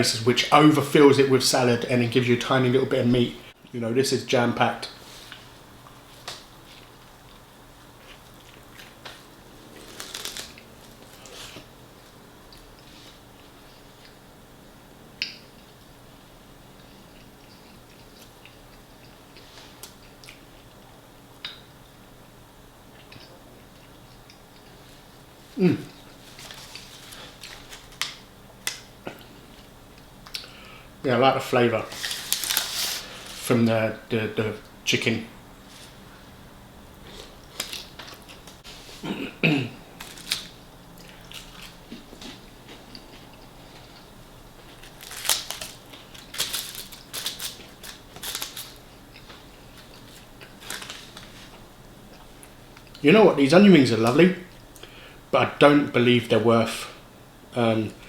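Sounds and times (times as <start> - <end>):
crisp bites and chewing: 8.0 - 11.6, 40.0 - 43.2, 44.7 - 51.6
person coughing: 39.0 - 39.8.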